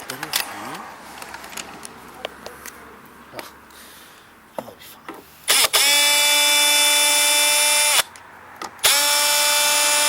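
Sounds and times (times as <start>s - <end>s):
power drill whining: 5.5s - 8.1s, 8.8s - 10.0s.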